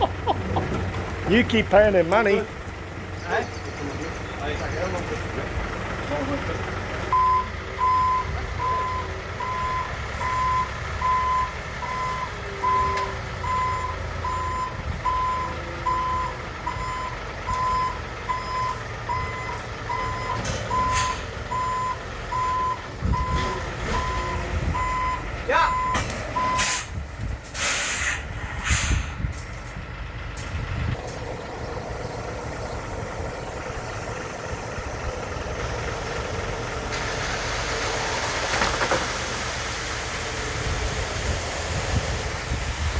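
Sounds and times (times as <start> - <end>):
diesel engine running: 0.0 - 42.9
reversing alarm beeping: 7.1 - 26.8
air brake hisses: 26.6 - 29.3.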